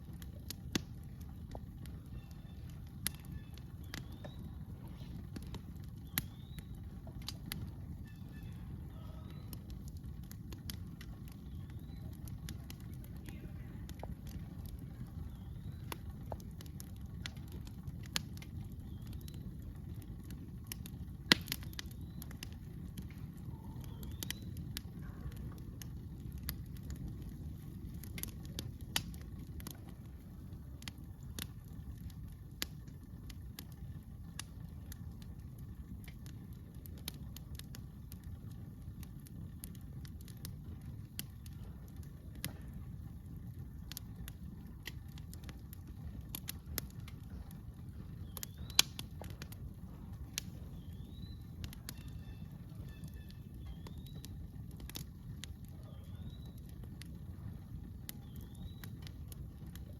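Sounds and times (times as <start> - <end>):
campfire crackling: 0.0 - 59.9
low rumble: 0.0 - 59.9.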